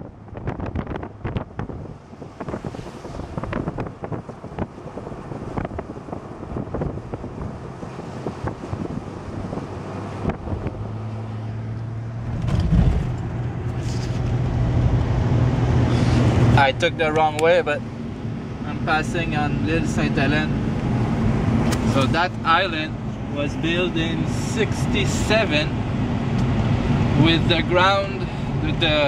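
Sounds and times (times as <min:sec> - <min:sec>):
road and wind noise: 0:00.0 - 0:29.0
low engine drone: 0:09.1 - 0:29.0
heavy low rumble: 0:12.0 - 0:29.0
vehicle rattles and knocks: 0:12.1 - 0:15.0.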